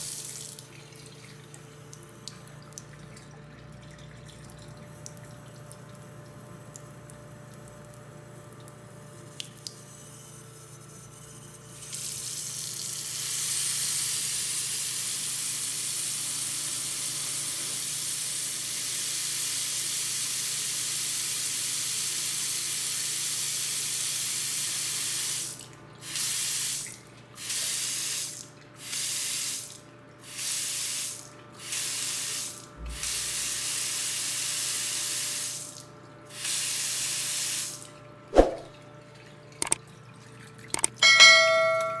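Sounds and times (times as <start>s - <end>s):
tap water running into sink: 11.8s - 38.0s, 38.6s - 42.0s
tap clicks: 39.6s - 39.8s, 40.7s - 41.0s.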